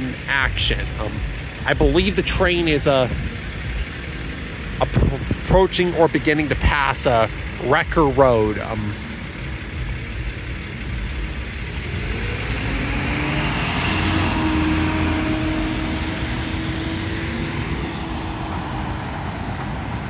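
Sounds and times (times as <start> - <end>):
steady engine hum: 0.0 - 20.0
vehicle driving past: 10.7 - 20.0.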